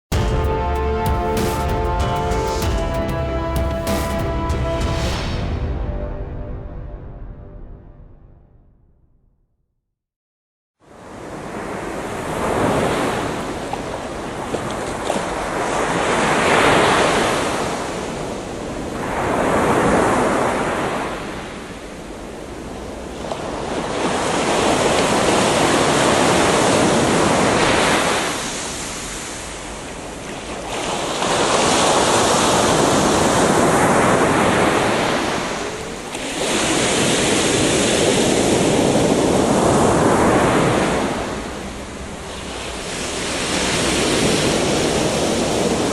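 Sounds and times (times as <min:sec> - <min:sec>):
ocean waves breaking: 0:00.1 - 0:06.4, 0:10.9 - 0:45.9
wind noise: 0:22.7 - 0:45.9.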